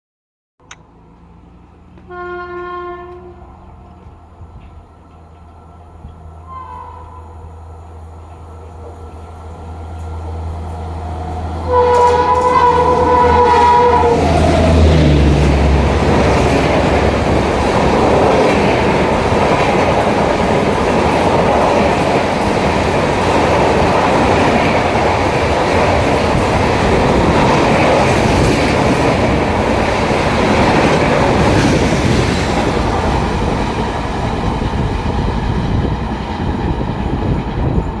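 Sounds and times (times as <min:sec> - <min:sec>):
two-tone train horn: 0:02.0 - 0:03.6, 0:06.4 - 0:07.5, 0:11.5 - 0:14.9.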